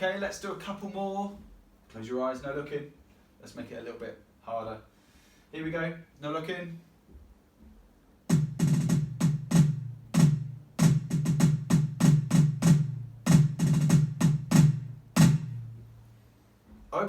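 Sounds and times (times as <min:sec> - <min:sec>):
electronic drum tom hits: 0:08.3 - 0:16.0.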